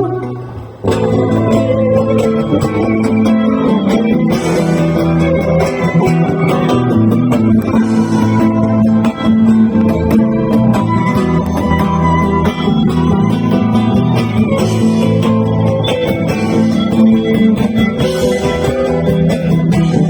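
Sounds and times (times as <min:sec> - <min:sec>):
bass guitar: 0:00.0 - 0:20.0
cajon beats: 0:00.0 - 0:20.0
strummed guitars: 0:00.0 - 0:20.0.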